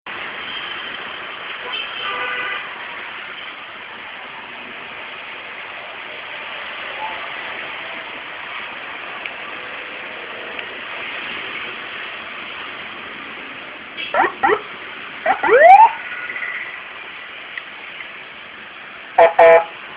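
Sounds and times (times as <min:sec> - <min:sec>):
police siren whoops: 0:15.3 - 0:16.0.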